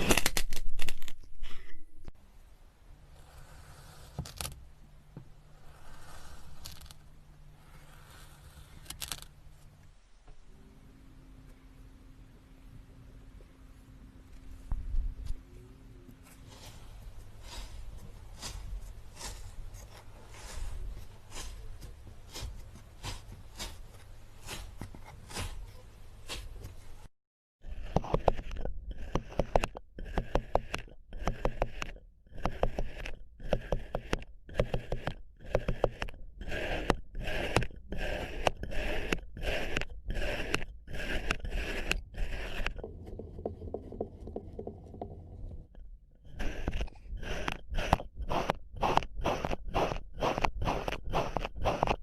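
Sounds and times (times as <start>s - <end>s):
crunchy scraping: 16.3s - 27.0s.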